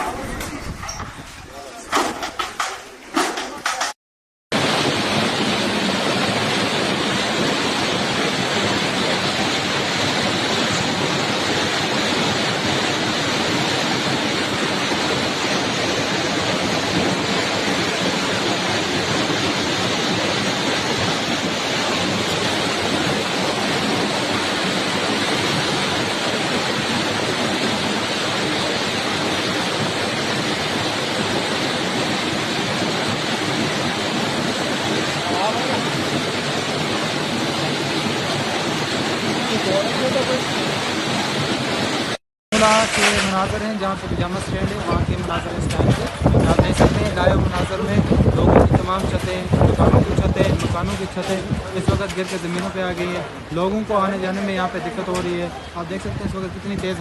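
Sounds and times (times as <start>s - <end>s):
storm noise hiss: 4.5s - 57.0s.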